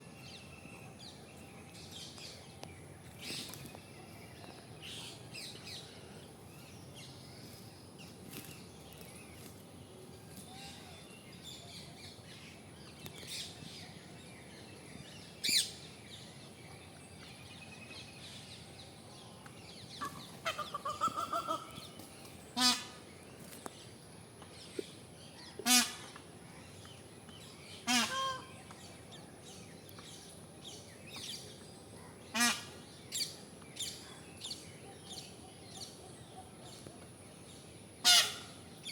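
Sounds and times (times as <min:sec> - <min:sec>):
peafowl honking calls: 0:20.0 - 0:21.8, 0:22.6 - 0:23.0, 0:27.8 - 0:28.5, 0:32.3 - 0:32.7, 0:38.0 - 0:38.6.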